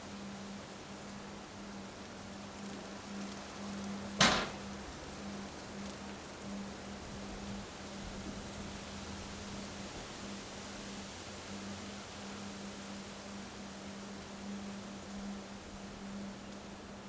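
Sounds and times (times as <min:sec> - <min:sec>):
sharp knock: 0:04.2 - 0:04.6.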